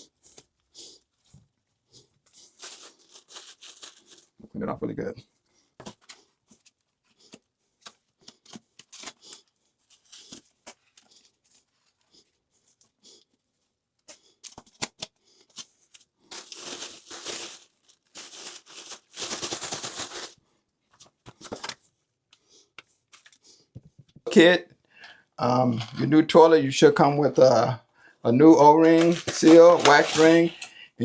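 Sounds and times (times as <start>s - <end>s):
scraping wax off flange: 28.8s - 30.7s.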